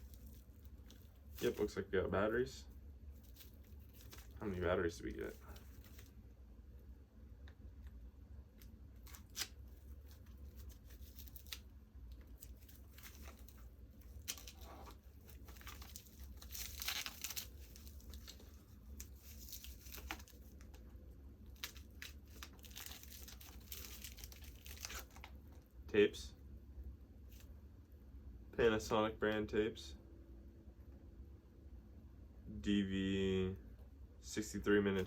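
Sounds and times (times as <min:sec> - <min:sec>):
packaging rustling and crinkling: 0:00.0 - 0:01.9, 0:03.1 - 0:06.2, 0:08.6 - 0:20.8, 0:21.4 - 0:25.7.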